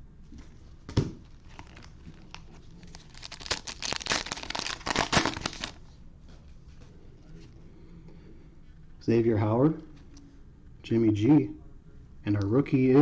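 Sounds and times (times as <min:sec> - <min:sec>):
plastic wrapper crinkling: 0:01.2 - 0:05.8.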